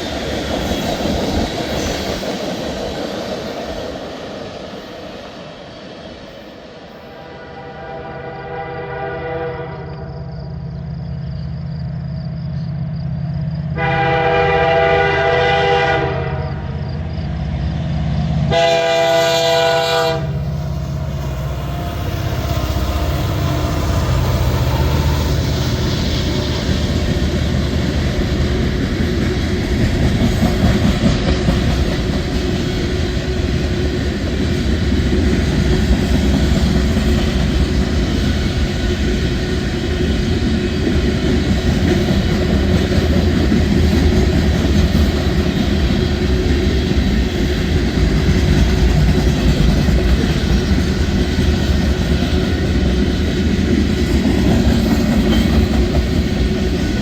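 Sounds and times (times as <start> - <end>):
freight train rumbling past: 0.0 - 57.0
locomotive horn chord: 7.2 - 10.2, 13.8 - 16.8, 18.5 - 20.4.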